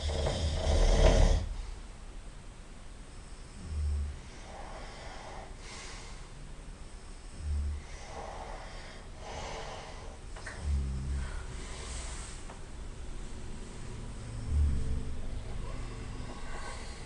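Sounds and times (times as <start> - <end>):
person snoring: 0.0 - 1.6, 3.6 - 5.6, 7.3 - 12.2, 14.2 - 17.0
noisy breaths: 0.0 - 2.0, 3.1 - 17.0.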